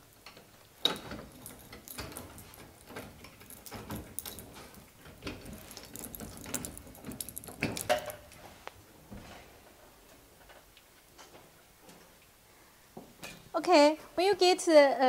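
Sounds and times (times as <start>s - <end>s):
vending machine metal clicks and rattles: 0.3s - 8.5s.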